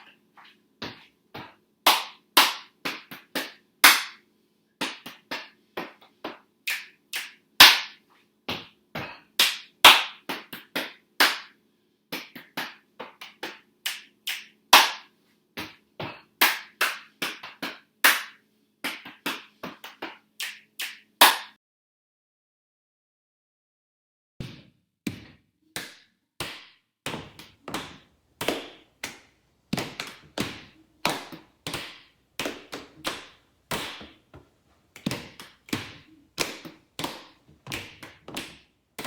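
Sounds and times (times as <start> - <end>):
hand claps: 0.9 - 4.2, 4.8 - 8.0, 8.6 - 11.6, 12.2 - 21.6, 25.8 - 39.0
thigh slaps: 25.8 - 39.0
belly pats: 27.1 - 38.7
foot stomps: 27.1 - 39.0.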